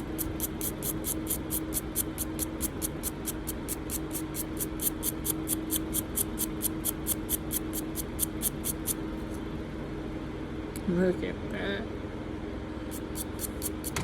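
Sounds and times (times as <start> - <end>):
brush scrubbing lighter wheel: 12.9 - 14.0.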